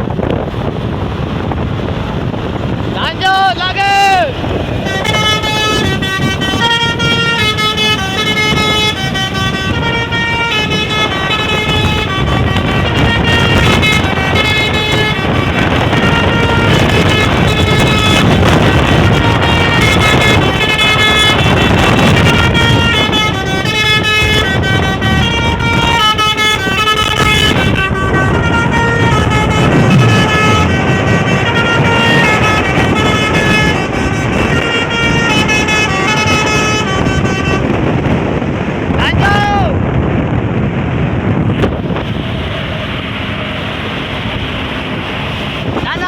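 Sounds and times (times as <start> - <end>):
bus engine running: 0.0 - 39.0, 39.8 - 46.0
bus horn playing a melody: 4.4 - 38.6.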